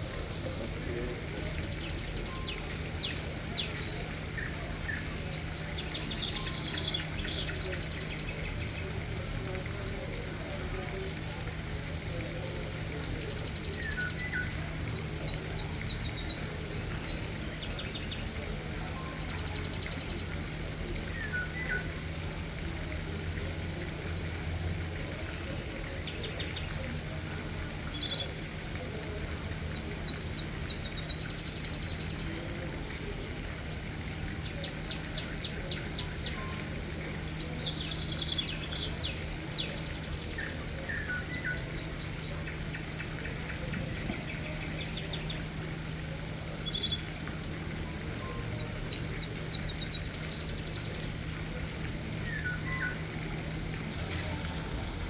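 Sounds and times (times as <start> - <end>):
flowing water: 0.0 - 55.0
small birds chirping: 33.8 - 55.0
low hum: 53.8 - 55.0.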